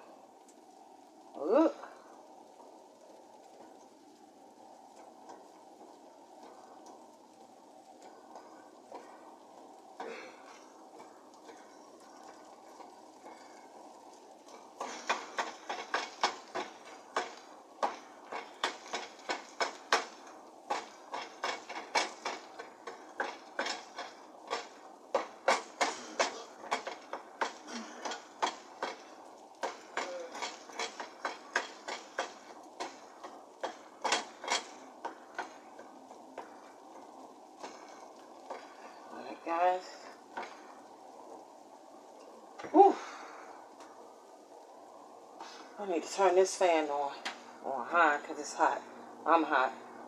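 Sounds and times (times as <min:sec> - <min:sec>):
faint steady hiss: 0:00.0 - 0:50.0
sharp knocks: 0:14.8 - 0:35.6.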